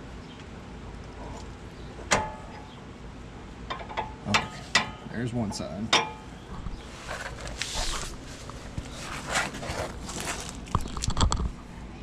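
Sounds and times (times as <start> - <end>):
hands and clothing rustling: 6.7 - 10.7.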